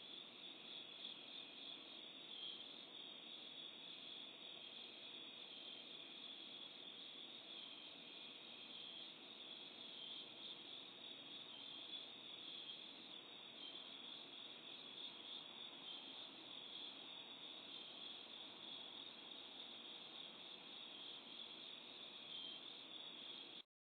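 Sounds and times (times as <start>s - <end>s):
crickets chirping: 0.0s - 23.6s.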